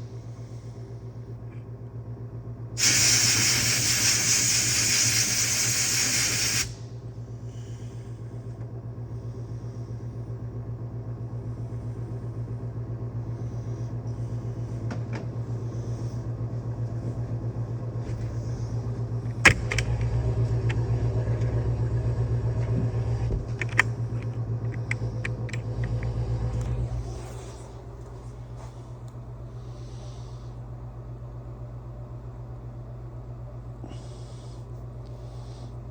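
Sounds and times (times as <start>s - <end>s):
car engine idling: 6.6s - 31.3s.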